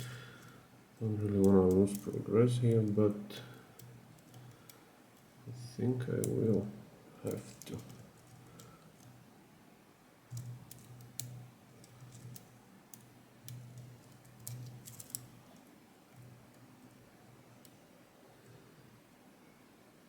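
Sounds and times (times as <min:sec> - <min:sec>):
lock pick clicking on pins: 0:10.3 - 0:15.6.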